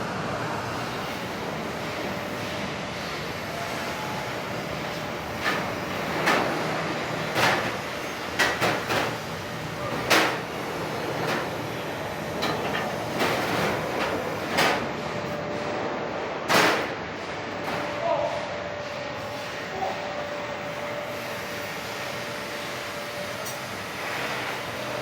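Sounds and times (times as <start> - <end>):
steady background noise: 0.0 - 25.0
knocks and clanks: 5.4 - 15.6, 16.4 - 18.0.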